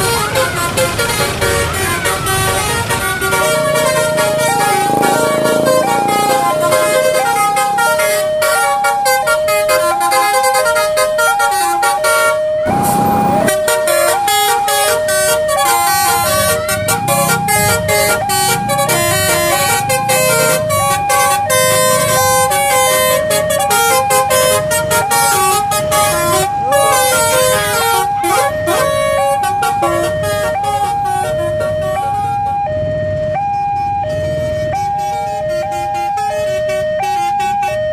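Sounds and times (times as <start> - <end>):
road traffic: 0.0 - 37.9
level crossing two-tone alarm: 3.5 - 9.7, 12.0 - 13.6, 26.0 - 35.7
loud noisy blast: 12.6 - 13.7.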